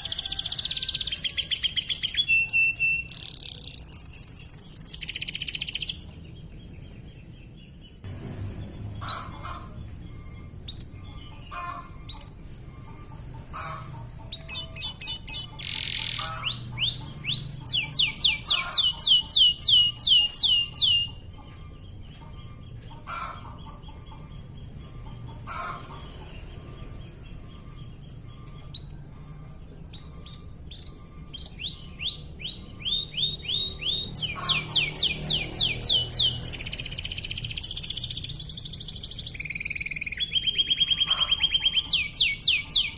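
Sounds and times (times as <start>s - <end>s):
canary single chirps: 0.0s - 6.1s, 13.6s - 21.2s, 29.9s - 42.9s
canary trilling: 0.0s - 6.5s, 8.8s - 42.9s.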